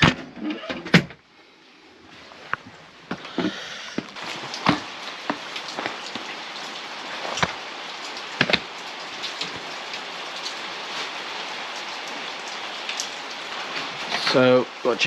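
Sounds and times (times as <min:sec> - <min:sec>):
hiss: 0:03.2 - 0:04.1.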